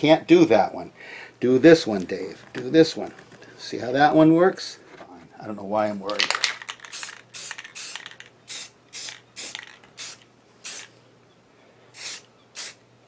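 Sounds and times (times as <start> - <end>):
spray paint can hissing: 6.7 - 10.9, 12.0 - 12.8.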